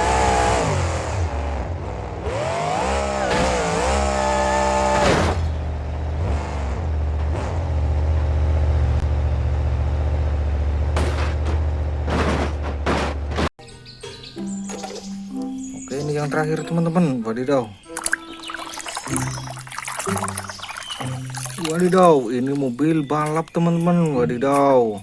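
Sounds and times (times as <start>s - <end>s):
vehicle engine revving: 0.0s - 12.2s.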